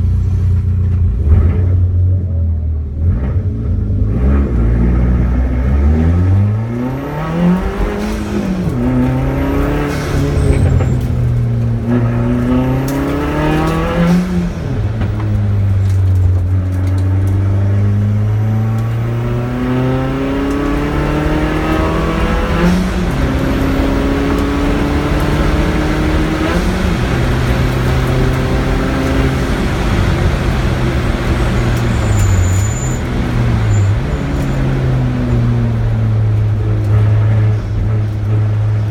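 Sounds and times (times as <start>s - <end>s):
car engine revving hard: 2.9s - 38.9s.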